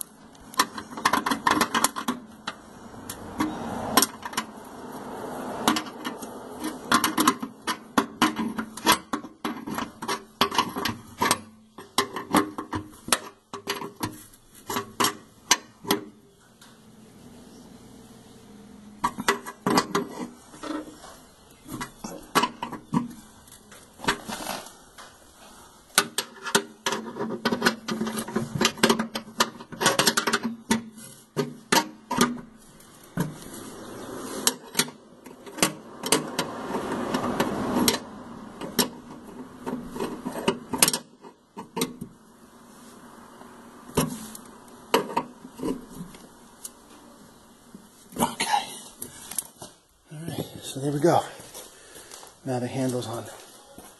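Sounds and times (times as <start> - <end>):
metal scraping and rattling: 0.0 - 16.3, 19.0 - 25.0, 25.9 - 43.0.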